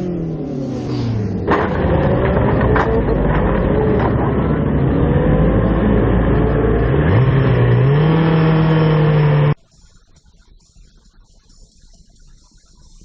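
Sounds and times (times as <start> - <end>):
car engine accelerating: 0.0 - 9.6
road noise: 0.0 - 9.6.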